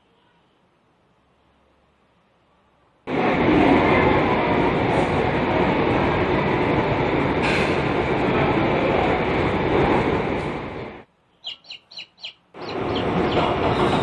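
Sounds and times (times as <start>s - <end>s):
loud steady rumbling: 3.1s - 11.1s, 12.5s - 14.0s.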